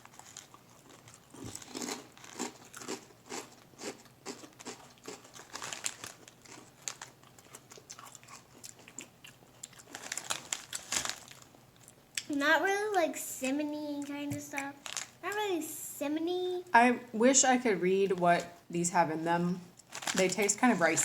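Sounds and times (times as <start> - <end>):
person chewing crunchy snack: 0.0 - 12.3.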